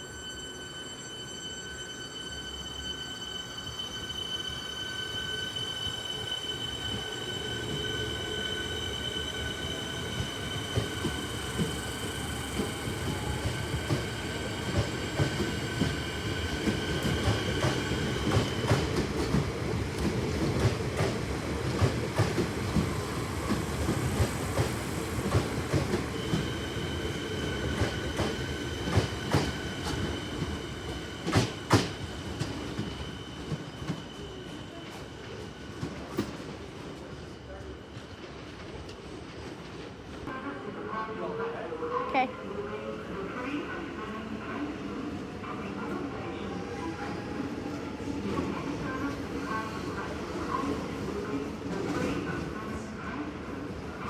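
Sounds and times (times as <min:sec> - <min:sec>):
train wheel squeal: 0:00.0 - 0:40.3.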